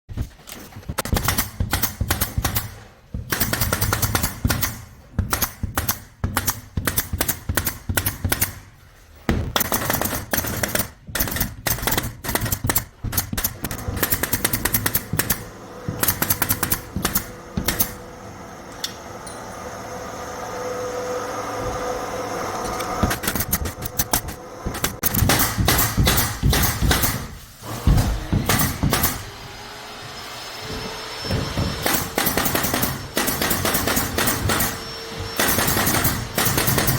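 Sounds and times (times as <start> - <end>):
air stapler firing: 1.0 - 8.6, 9.4 - 18.0, 23.0 - 27.4.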